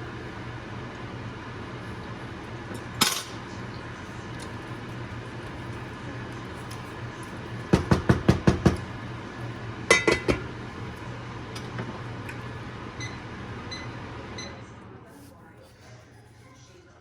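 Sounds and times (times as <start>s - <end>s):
cookware knocks: 9.9s - 10.5s.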